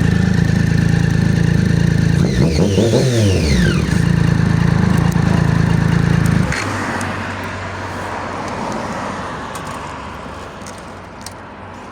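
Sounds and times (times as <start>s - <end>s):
motorcycle engine idling: 0.0s - 6.6s.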